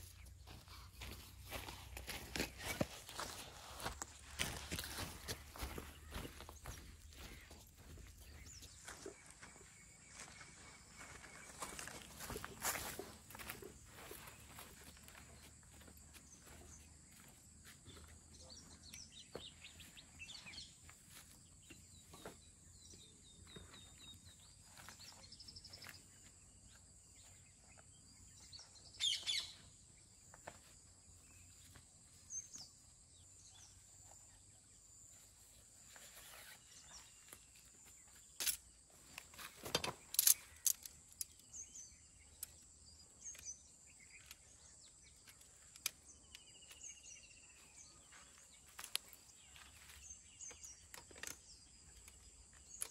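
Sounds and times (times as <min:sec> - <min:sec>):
birds chirping and calling: 0:00.0 - 0:30.1.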